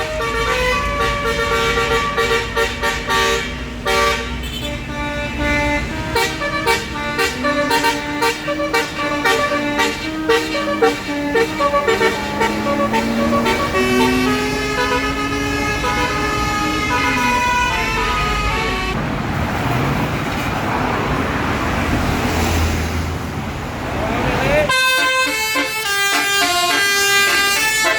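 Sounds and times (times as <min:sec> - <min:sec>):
bus air horn melody: 0:00.0 - 0:19.0, 0:24.7 - 0:27.9.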